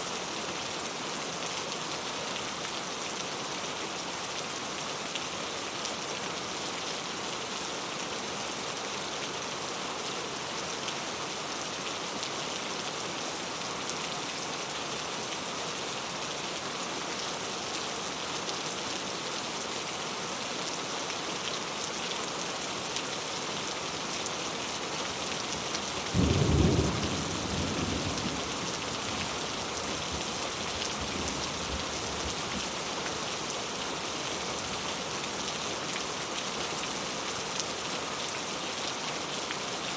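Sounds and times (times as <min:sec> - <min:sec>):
heavy rain: 0:00.0 - 0:39.9
thunder clap rumbling: 0:26.2 - 0:28.5.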